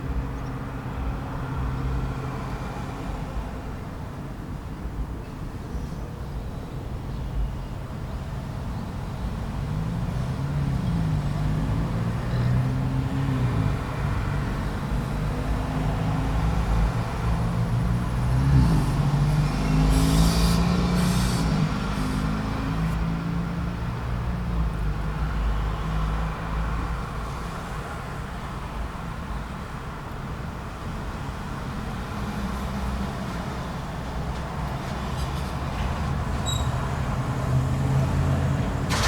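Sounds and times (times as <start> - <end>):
vehicle engines pulling away: 8.2 - 27.5, 31.6 - 39.0
short sharp hisses: 18.5 - 22.9.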